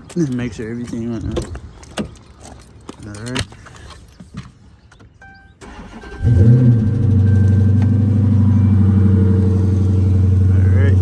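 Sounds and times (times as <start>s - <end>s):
car engine starting and idling: 5.6s - 11.0s.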